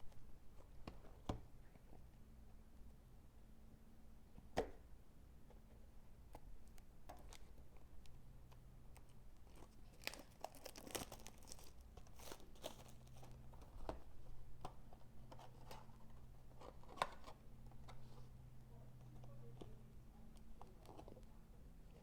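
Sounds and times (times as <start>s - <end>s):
plastic wrap crinkling: 9.4s - 13.9s.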